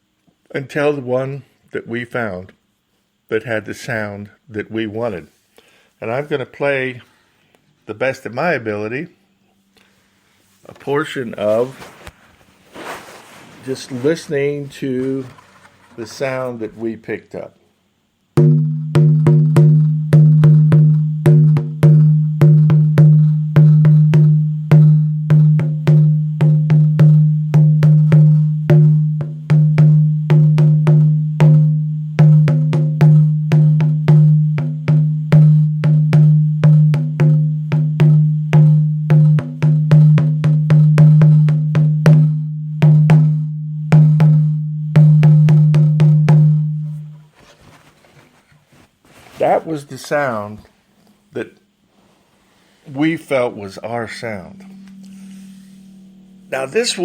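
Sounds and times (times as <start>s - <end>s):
hide drum beating: 18.4s - 47.9s, 53.1s - 57.0s.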